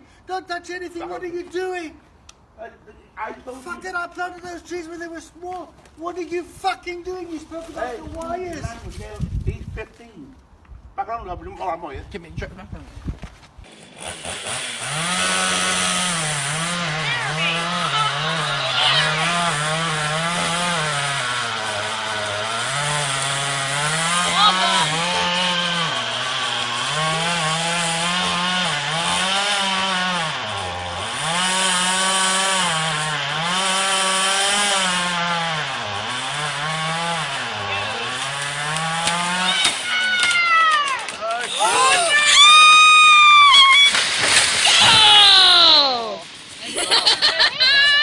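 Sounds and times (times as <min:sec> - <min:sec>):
chainsaw revving and cutting: 0:13.6 - 0:39.9.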